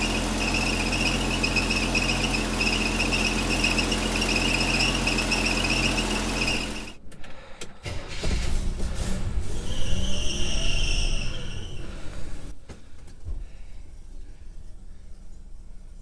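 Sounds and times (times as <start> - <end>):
car engine idling: 0.0 - 7.0, 10.3 - 12.5
high-pitched belt squeal: 0.0 - 7.0, 9.5 - 12.5.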